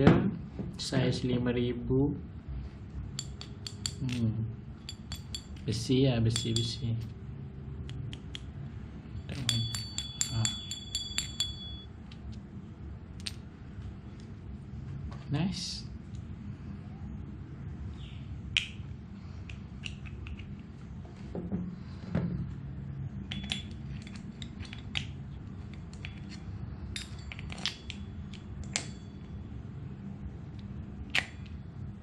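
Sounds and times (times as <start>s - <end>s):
low hum: 0.0s - 32.0s.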